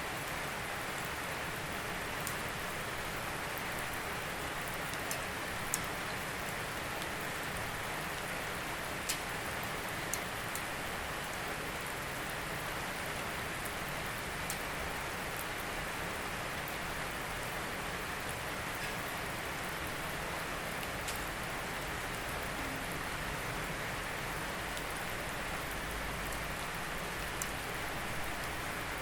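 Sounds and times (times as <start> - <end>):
steady rain falling: 0.0 - 29.0
sharp drip ticks: 9.0 - 9.3.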